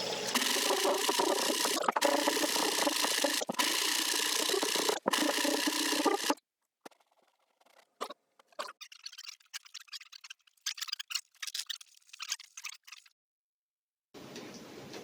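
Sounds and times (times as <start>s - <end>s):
power tool rasping plywood: 0.3s - 6.4s.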